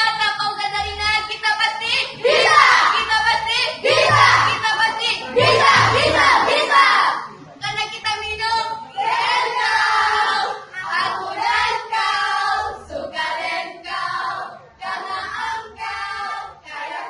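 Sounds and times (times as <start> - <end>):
group chanting a cheer: 2.2 - 7.3.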